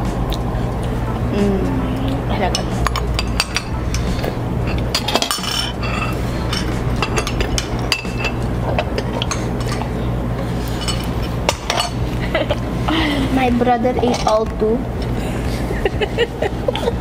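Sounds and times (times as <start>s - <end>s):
steady low hum: 0.0s - 17.0s
cutlery clinking against dishes: 2.5s - 4.1s, 4.7s - 9.9s, 10.7s - 12.0s.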